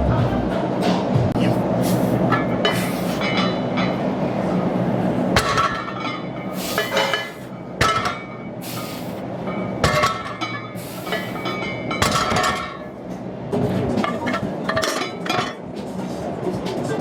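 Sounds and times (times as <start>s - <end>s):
gym background noise: 0.0s - 17.0s
weight plates clanking: 5.4s - 13.1s, 13.7s - 15.7s.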